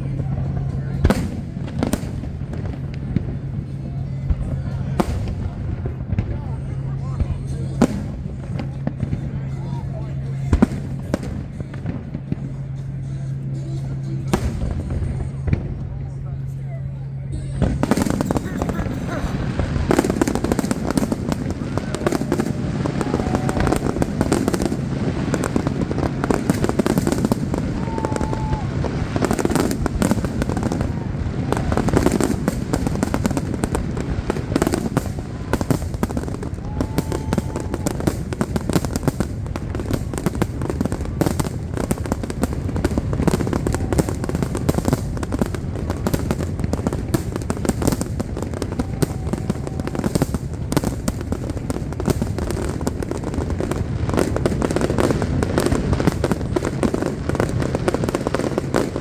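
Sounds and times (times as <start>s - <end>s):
fireworks crackling: 0.0s - 59.0s.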